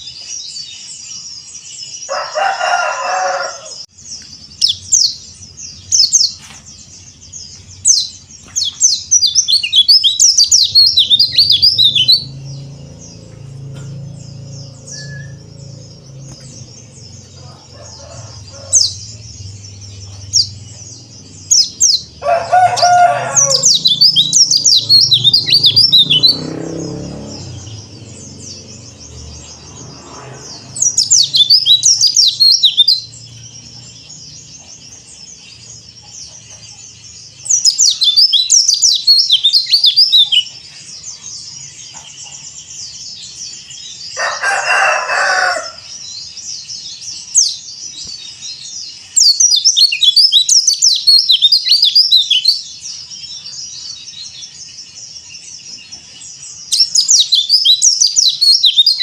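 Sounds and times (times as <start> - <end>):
bird twittering song: 0.0 - 59.0
high bird chirps: 0.0 - 59.0
lower bird call: 2.1 - 26.6.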